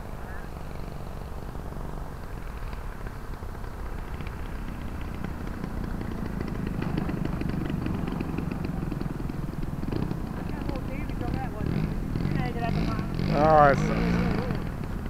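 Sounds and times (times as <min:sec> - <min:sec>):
model plane engine rumbling: 0:00.0 - 0:15.0
fast rattling tick: 0:02.4 - 0:13.3.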